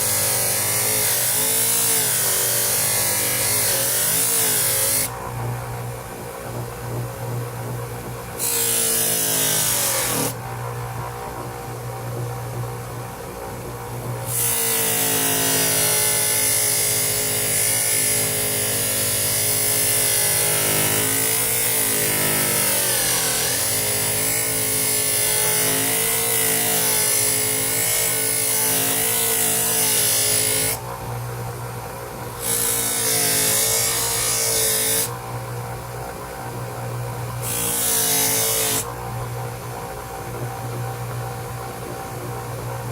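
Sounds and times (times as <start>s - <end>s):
bench grinder motor hum: 0.0s - 5.6s, 8.4s - 10.4s, 14.1s - 31.2s, 32.1s - 35.3s, 37.1s - 39.0s.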